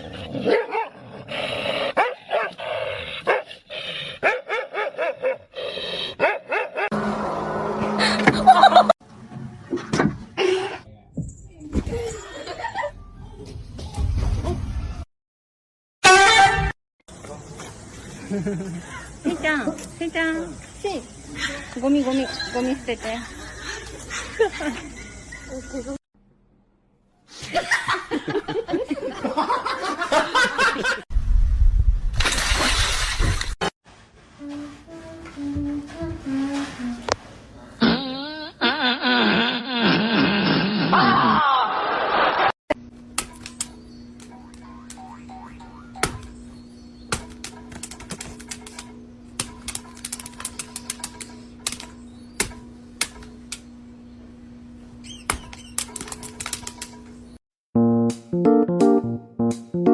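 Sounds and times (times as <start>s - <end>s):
laughter: 8.0s - 9.0s, 12.2s - 13.0s, 18.2s - 19.4s, 21.4s - 25.9s, 27.4s - 31.0s, 38.6s - 42.5s.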